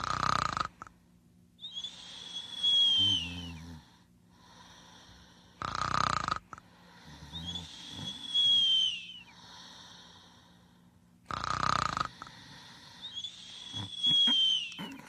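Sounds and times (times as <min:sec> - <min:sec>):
pet snoring with whistling: 0:00.0 - 0:00.9, 0:01.6 - 0:04.0, 0:05.6 - 0:09.9, 0:11.3 - 0:15.0
harsh raspy breath: 0:09.3 - 0:15.0.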